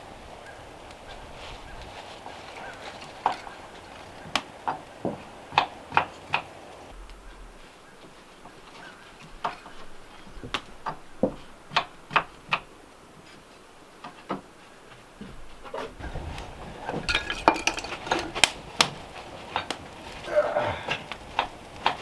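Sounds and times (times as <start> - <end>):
dishes clinking: 2.1 - 6.9, 16.0 - 22.0.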